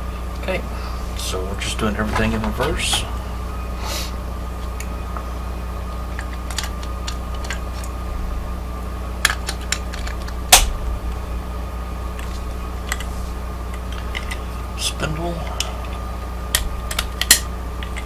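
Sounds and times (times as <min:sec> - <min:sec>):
steady background hum: 0:00.0 - 0:18.0
metallic clicks of lock parts: 0:16.5 - 0:18.0.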